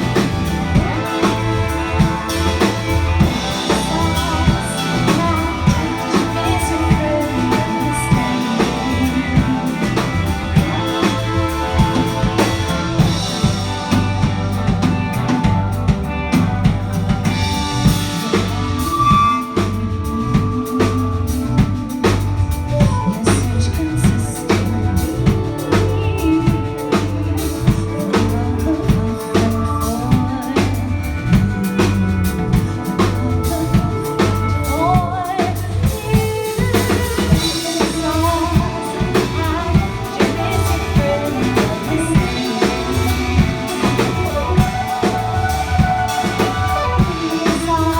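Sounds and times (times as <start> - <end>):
drum kit beat: 0.0 - 47.9
live band playing: 0.0 - 47.9.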